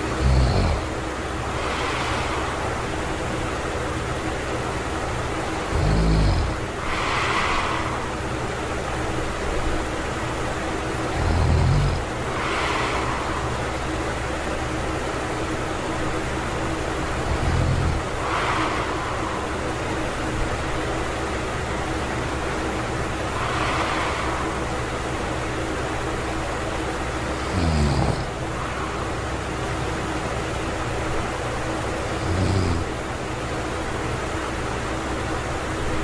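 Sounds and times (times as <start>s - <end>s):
low rumble in throat: 0.0s - 33.3s
man breathing while asleep: 0.0s - 34.0s
background hiss: 0.0s - 34.5s.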